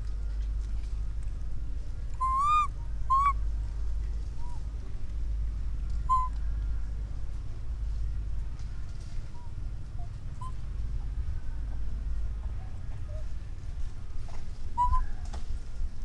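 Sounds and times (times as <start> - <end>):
steady low rumble: 0.0 - 16.0
baby monkey high-pitched calls: 2.2 - 3.4, 6.1 - 6.4, 10.0 - 10.6, 14.8 - 15.3.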